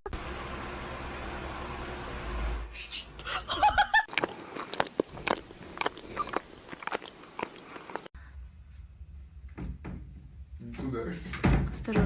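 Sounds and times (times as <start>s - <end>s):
chewing and crunching: 4.0s - 8.1s.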